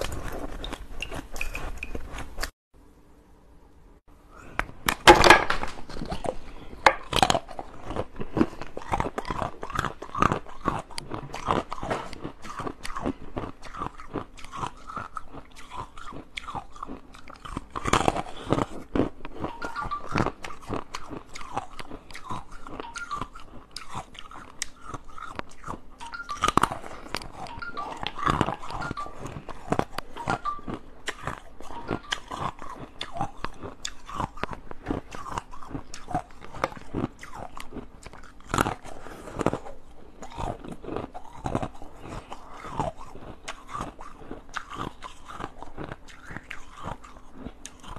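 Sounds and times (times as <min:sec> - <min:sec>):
person crunching ice: 0:00.0 - 0:02.5.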